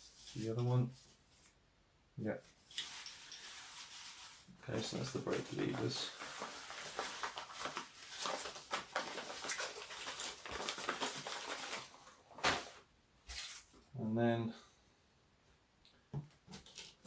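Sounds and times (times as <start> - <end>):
plastic packaging crinkling: 2.6 - 13.8.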